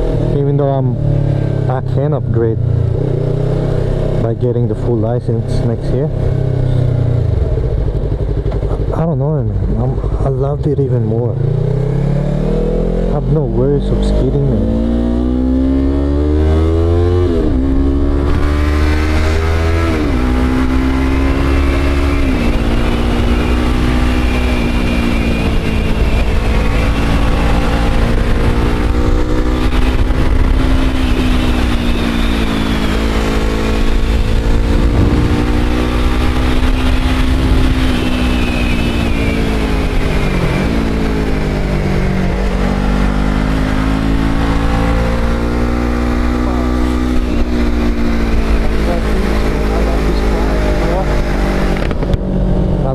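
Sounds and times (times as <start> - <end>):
motorcycle engine shifting gears: 2.6 - 52.9
wind rumble on microphone: 24.4 - 42.4.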